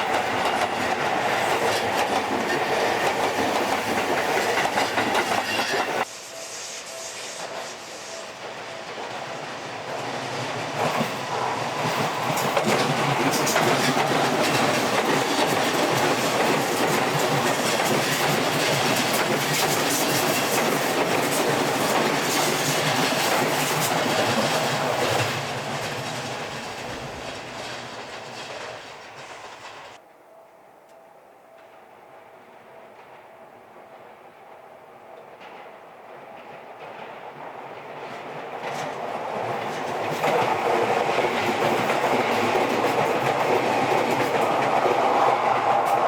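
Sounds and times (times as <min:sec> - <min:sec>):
electric train passing: 0:00.0 - 0:46.0
wheels clattering over rail joints: 0:08.4 - 0:30.0.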